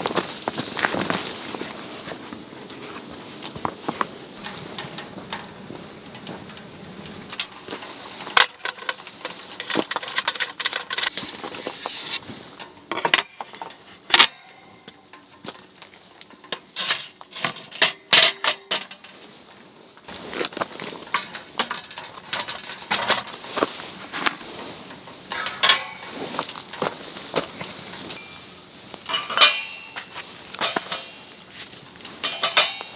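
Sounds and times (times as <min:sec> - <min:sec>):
metal cookware clinking: 0:12.6 - 0:15.4, 0:16.3 - 0:19.2, 0:21.0 - 0:32.9.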